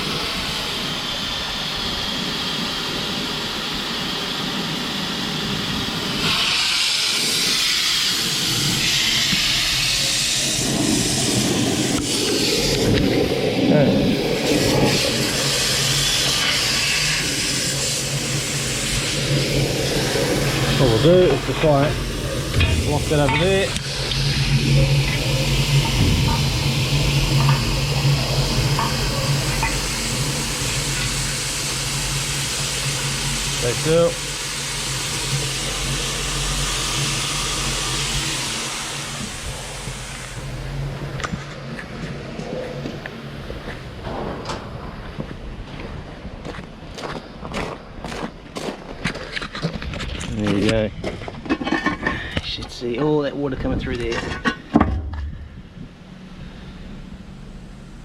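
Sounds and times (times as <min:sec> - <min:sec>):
water jetter blasting: 0:00.0 - 0:45.7
machine running: 0:00.0 - 0:47.2.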